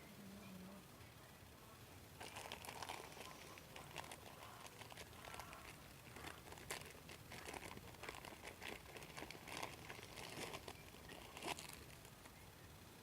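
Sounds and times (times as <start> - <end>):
plastic packaging crinkling: 2.2 - 12.3.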